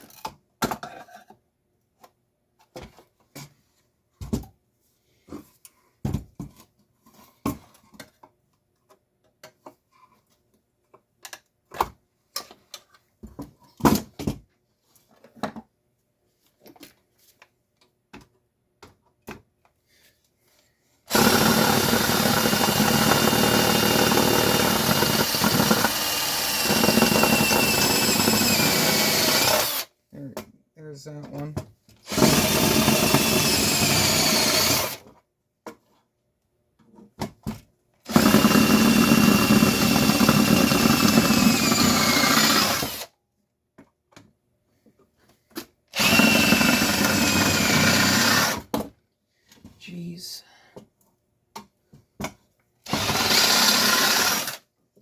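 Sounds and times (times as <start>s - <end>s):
power drill whining: 21.1s - 29.9s, 32.0s - 35.0s, 38.1s - 43.1s, 45.9s - 48.7s, 52.8s - 54.6s.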